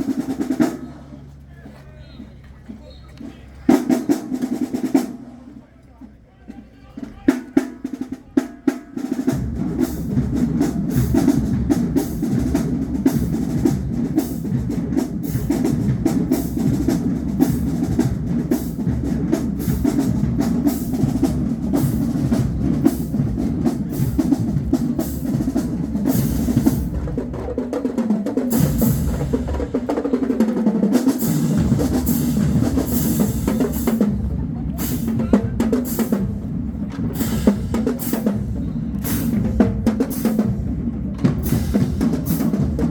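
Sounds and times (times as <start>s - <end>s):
snare drums: 0.0s - 42.9s
bass drums: 9.0s - 42.9s.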